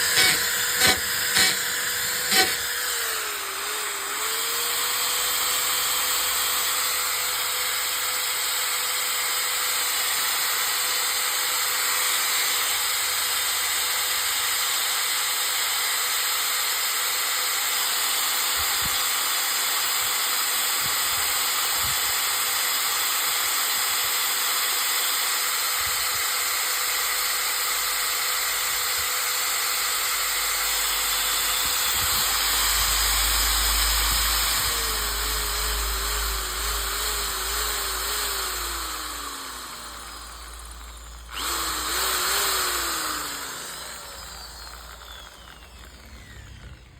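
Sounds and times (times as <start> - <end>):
electric drill running: 0.0 - 46.9.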